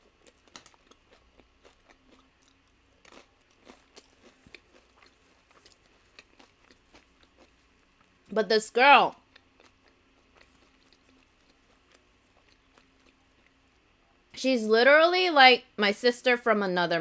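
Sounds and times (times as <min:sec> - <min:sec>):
chewing crisp chips: 0:00.0 - 0:08.3, 0:09.1 - 0:14.3.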